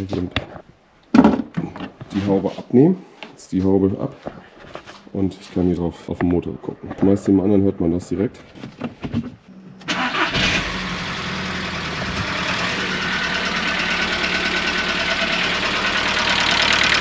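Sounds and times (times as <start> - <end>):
car engine starting and idling: 9.6 - 17.0
engine ticking clatter: 10.4 - 17.0.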